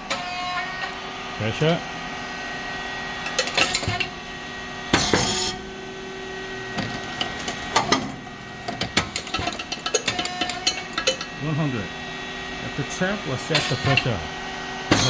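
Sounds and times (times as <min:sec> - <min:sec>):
motor and pump hum: 0:00.0 - 0:15.0
machine clicks and knocks: 0:03.3 - 0:04.1, 0:06.8 - 0:11.3, 0:13.5 - 0:14.1.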